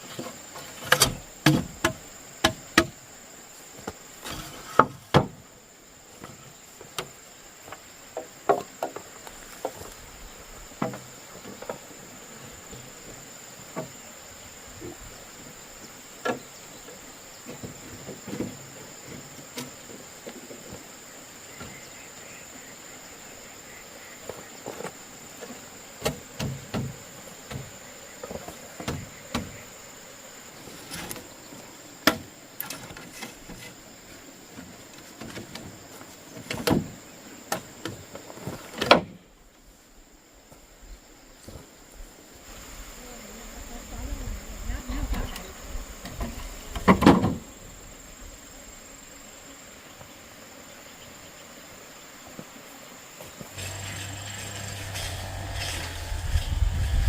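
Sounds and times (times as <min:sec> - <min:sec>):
high insect drone: 0:00.0 - 0:57.0
sharp knocks on wood: 0:00.9 - 0:03.0.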